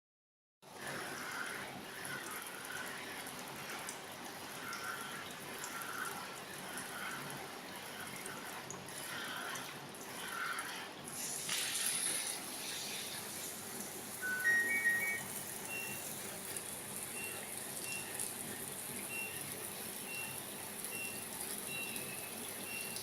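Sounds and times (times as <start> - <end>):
water running and splashing: 0.8 - 23.0
water dripping: 14.2 - 23.0.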